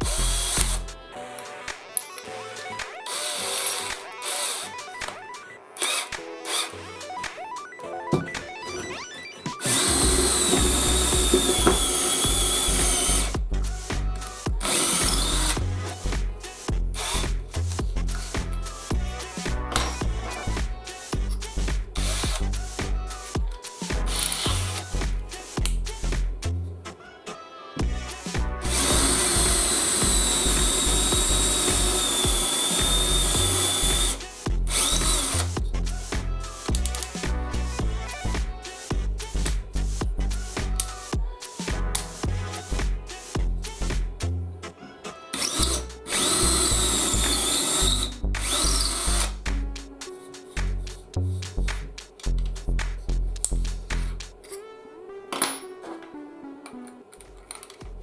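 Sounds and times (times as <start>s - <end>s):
background music with bass: 0.0s - 1.2s, 9.6s - 27.0s, 27.8s - 44.8s, 45.4s - 54.4s
power tool motor whining: 3.1s - 4.9s, 9.6s - 13.3s, 14.6s - 15.6s, 28.7s - 35.4s, 45.4s - 49.4s.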